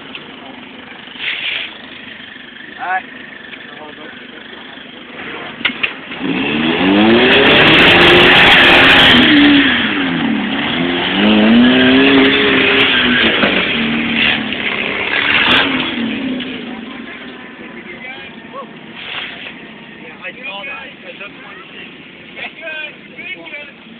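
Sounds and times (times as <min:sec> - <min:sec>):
engine revving hard: 0:05.2 - 0:17.0.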